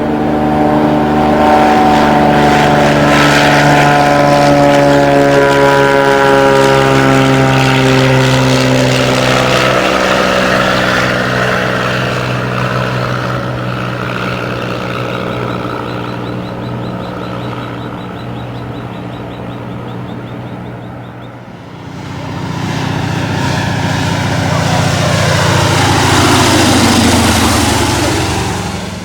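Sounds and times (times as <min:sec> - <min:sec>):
propeller plane engine passing: 0:00.0 - 0:29.0.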